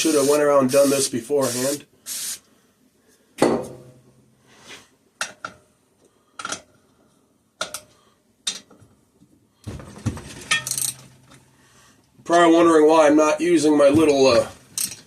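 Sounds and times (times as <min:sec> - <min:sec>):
tools clinking on metal: 0:14.8 - 0:15.0.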